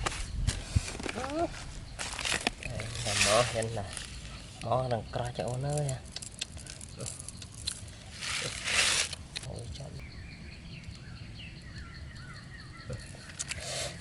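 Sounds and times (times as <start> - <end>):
rustling and scratching: 0.0 - 10.0.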